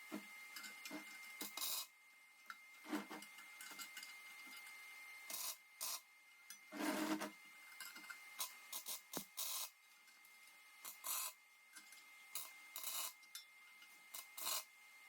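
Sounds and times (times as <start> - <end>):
scraping on steel parts: 10.8 - 14.7.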